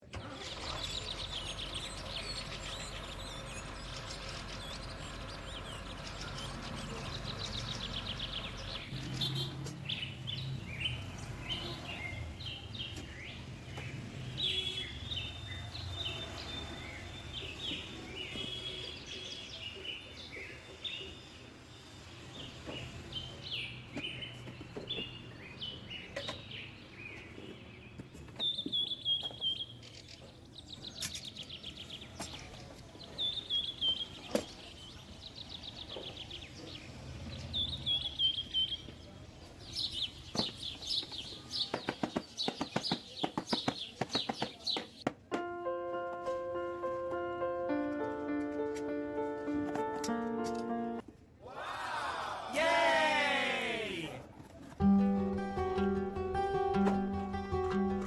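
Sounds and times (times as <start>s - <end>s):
birds chirping: 0.1s - 21.5s, 22.3s - 45.1s.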